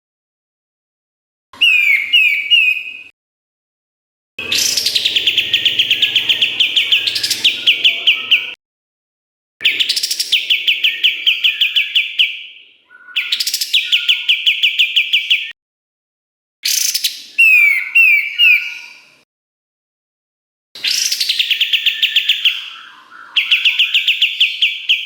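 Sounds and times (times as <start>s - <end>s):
bird singing fast repeated notes: 1.6s - 3.1s, 4.4s - 8.6s, 9.6s - 15.5s, 20.9s - 25.0s.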